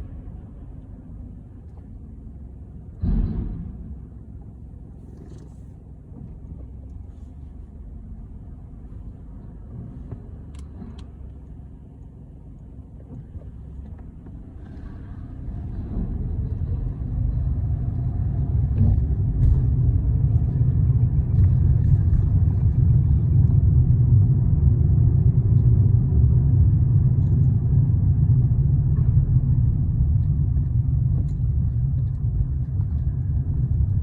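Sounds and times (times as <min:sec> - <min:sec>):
car tyre and engine rumble: 0:00.0 - 0:34.0
car thump: 0:03.0 - 0:04.2.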